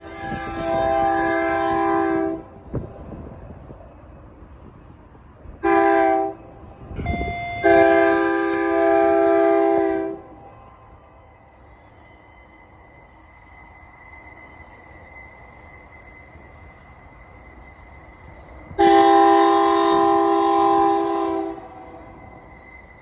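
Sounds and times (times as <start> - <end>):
locomotive air horn blasts: 0.0 - 2.5, 5.6 - 6.4, 7.1 - 10.2, 18.8 - 21.7
low rumble of passing train: 0.0 - 23.0.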